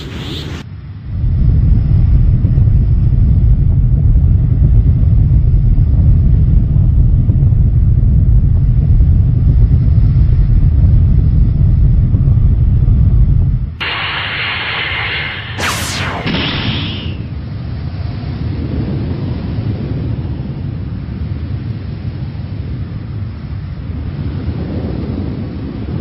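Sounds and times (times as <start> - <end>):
loud low rumble: 1.0 - 17.6.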